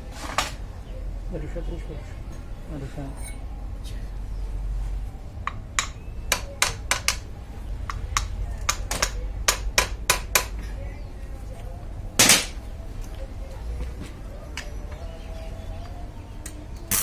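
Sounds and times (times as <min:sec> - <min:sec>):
sharp taps and knocks: 0:05.5 - 0:07.3.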